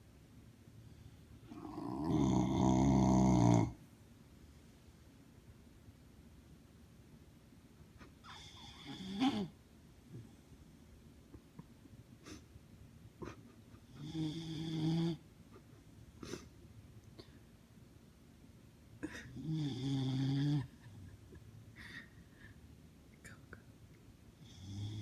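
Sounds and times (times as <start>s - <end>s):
person snoring: 1.5s - 3.8s, 19.0s - 20.7s.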